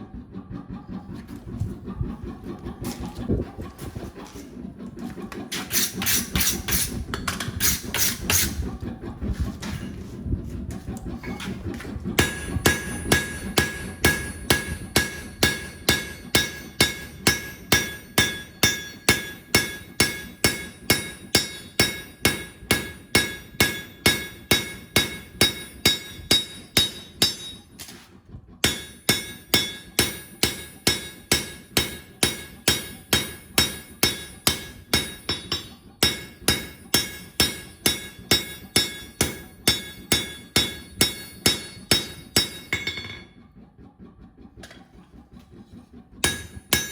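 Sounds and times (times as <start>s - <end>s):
hammer ringing on steel anvil: 12.2s - 27.7s, 28.6s - 43.3s, 46.2s - 46.9s.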